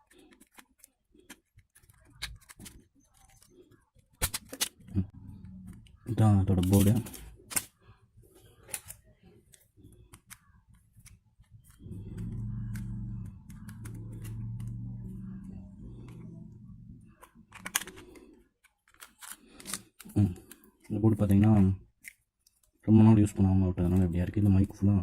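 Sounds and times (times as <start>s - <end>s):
low humming: 11.6s - 17.3s.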